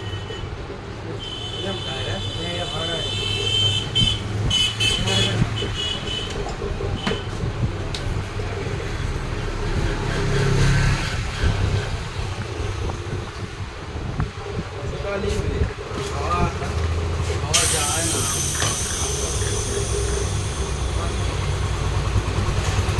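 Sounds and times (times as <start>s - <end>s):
vehicle horn beeping: 0.0s - 0.5s, 1.2s - 7.3s
street traffic: 0.0s - 22.9s
vehicle passing: 8.2s - 13.7s.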